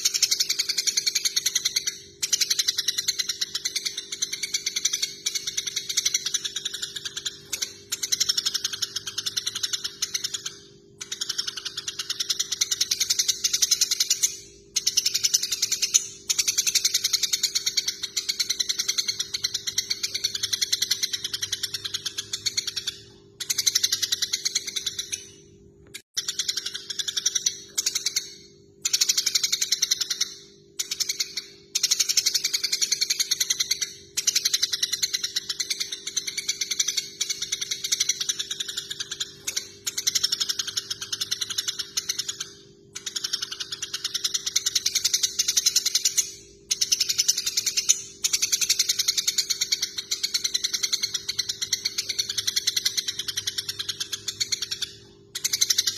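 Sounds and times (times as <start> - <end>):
sparrows chattering: 0.0 - 25.5, 26.2 - 55.9.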